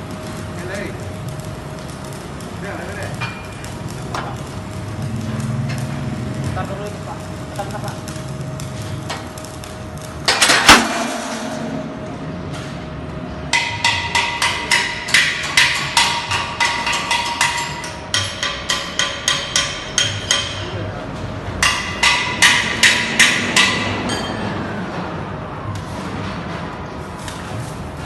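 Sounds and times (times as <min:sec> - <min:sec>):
machine hum: 0:00.0 - 0:28.0
metal-on-metal machine knocking: 0:13.6 - 0:20.6, 0:21.6 - 0:24.4.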